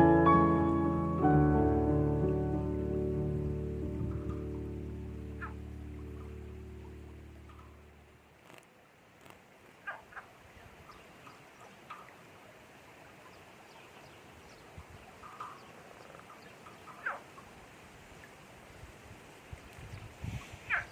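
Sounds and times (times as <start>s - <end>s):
flowing river water: 0.0s - 20.9s.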